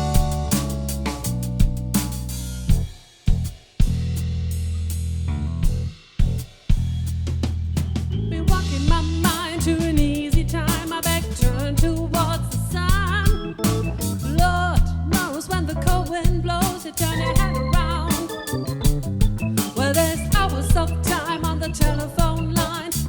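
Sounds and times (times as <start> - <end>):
vibrato lead melody: 0.0 - 1.1, 17.0 - 22.1
drum beat: 0.0 - 4.5, 5.6 - 23.0
bass line: 0.0 - 23.0.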